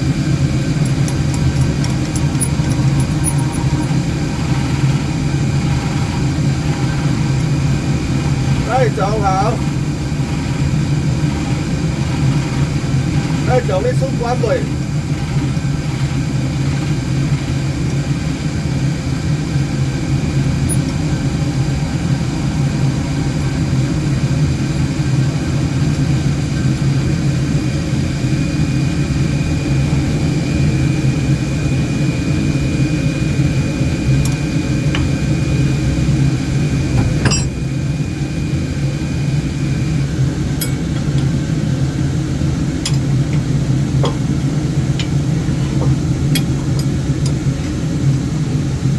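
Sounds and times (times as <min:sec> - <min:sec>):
wood lathe humming: 0:00.0 - 0:08.7.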